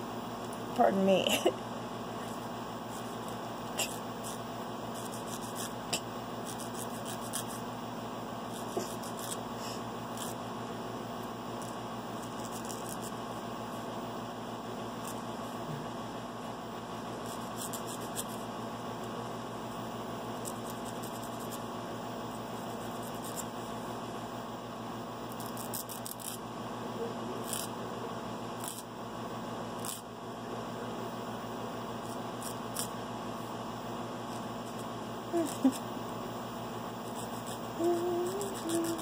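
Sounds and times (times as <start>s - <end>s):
steady background hum: 0.0s - 39.0s
nail file scraping toenail: 2.3s - 7.6s, 8.5s - 9.4s, 10.1s - 10.4s, 11.6s - 13.2s, 17.2s - 18.4s, 20.4s - 21.6s, 22.6s - 23.5s, 25.3s - 26.4s, 27.4s - 27.7s, 28.6s - 28.9s, 29.8s - 30.0s, 32.0s - 32.9s, 37.0s - 39.0s.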